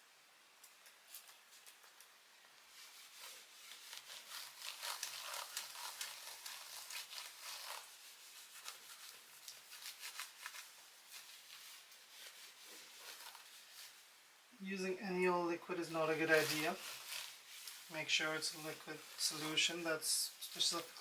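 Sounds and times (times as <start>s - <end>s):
cloth wiping laptop casing: 2.7s - 14.2s, 16.0s - 21.0s.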